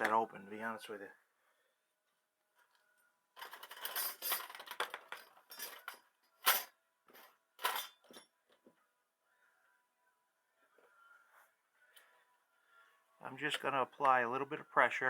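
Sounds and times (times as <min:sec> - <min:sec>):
small metal parts clinking and scraping: 0:03.4 - 0:08.4.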